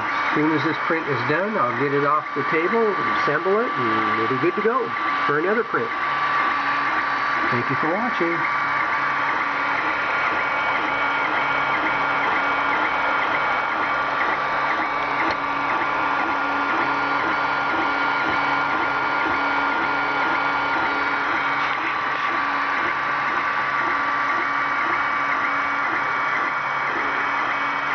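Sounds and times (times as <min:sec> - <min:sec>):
cooling fan hum: 0:00.0 - 0:27.9
stepper motors whining: 0:00.0 - 0:27.9.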